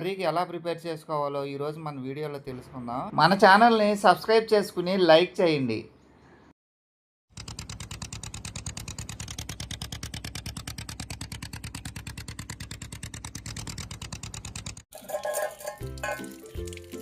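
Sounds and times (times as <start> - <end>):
boat engine running: 7.3 - 14.8
music: 15.4 - 17.0.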